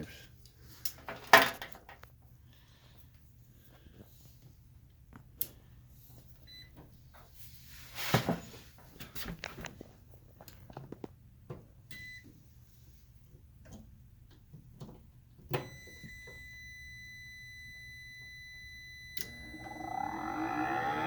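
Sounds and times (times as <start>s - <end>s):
fan motor whine: 15.6s - 21.0s
high electronic beep: 18.5s - 21.0s.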